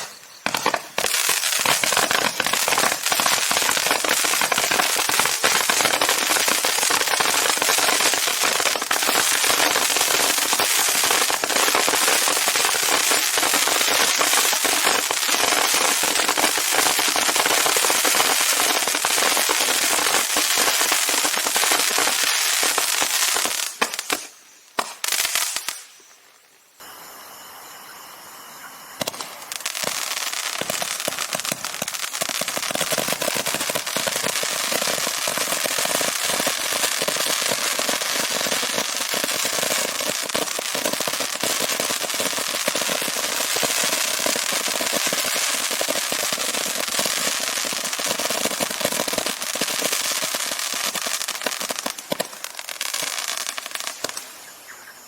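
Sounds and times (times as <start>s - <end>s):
fireworks pops: 0.0s - 26.2s, 29.0s - 35.4s, 46.9s - 54.4s
fireworks crackling: 0.0s - 26.9s, 29.0s - 54.7s
faint steady hiss: 0.0s - 55.0s.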